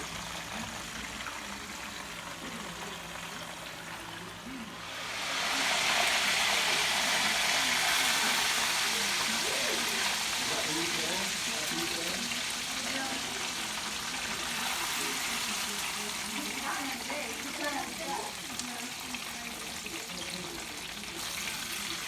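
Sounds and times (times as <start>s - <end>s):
background chatter of voices: 0.0s - 22.0s.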